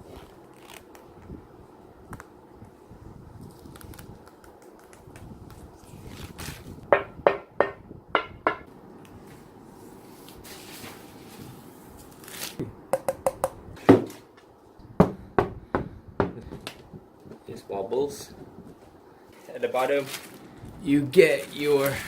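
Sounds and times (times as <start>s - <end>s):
soft rustle: 9.2s - 12.6s, 18.6s - 22.0s
heavy knock: 15.0s - 16.6s.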